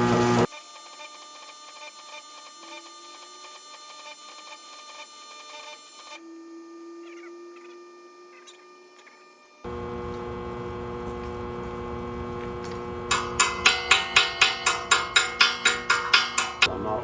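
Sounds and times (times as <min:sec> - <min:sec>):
welding machine electrical hum: 0:00.0 - 0:00.5, 0:09.7 - 0:16.8.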